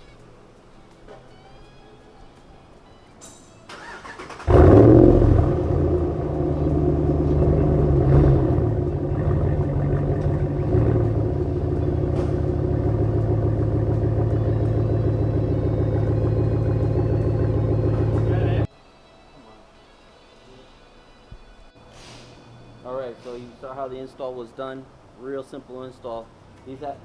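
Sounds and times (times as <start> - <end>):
pickup truck engine starting and idling: 3.6 - 18.7.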